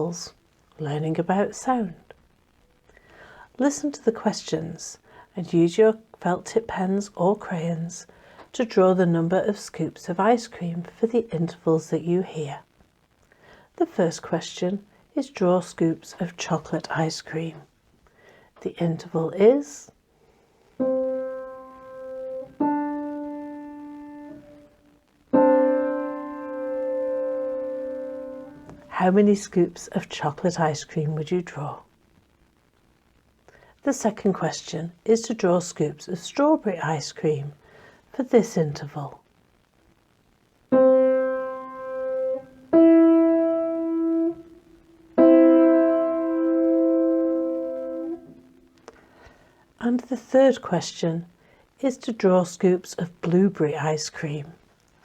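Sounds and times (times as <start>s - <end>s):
piano notes: 20.8s - 24.7s, 25.3s - 28.9s, 40.7s - 44.6s, 45.2s - 48.4s.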